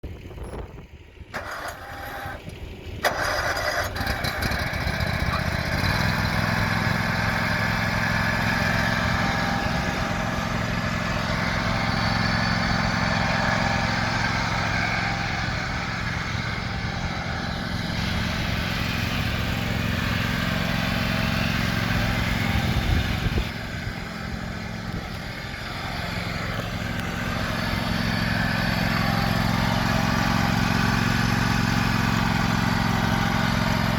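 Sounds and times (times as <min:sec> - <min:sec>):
riding mower engine running: 0:00.0 - 0:33.9
starter clicking: 0:01.3 - 0:04.6.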